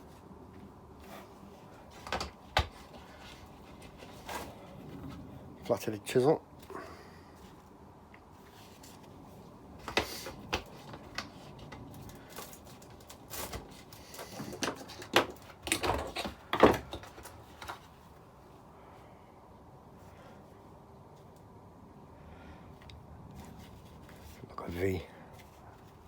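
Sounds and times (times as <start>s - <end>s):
metal parts clicking and knocking: 11.2s - 17.8s.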